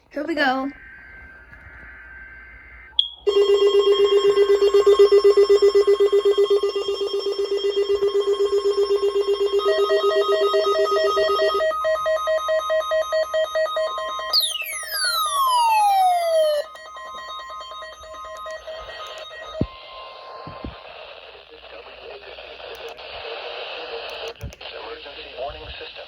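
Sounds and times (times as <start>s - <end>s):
higher pulsing alarm tone: 0.7s - 20.8s
pulsing alarm buzz: 0.7s - 20.8s.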